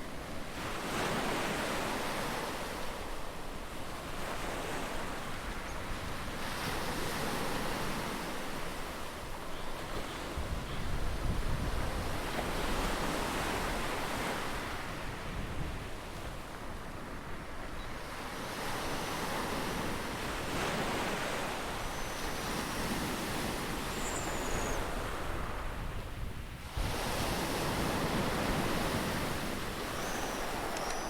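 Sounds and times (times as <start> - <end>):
ocean waves breaking: 16.4 - 31.0.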